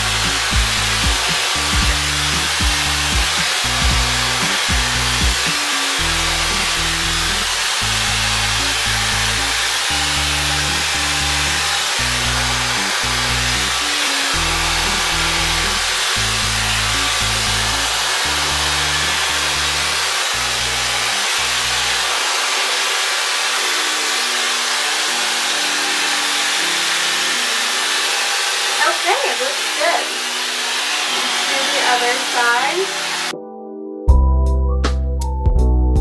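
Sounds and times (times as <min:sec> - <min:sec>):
music with bass line: 0:00.0 - 0:13.8, 0:34.1 - 0:36.0
hair dryer blowing: 0:00.0 - 0:33.4.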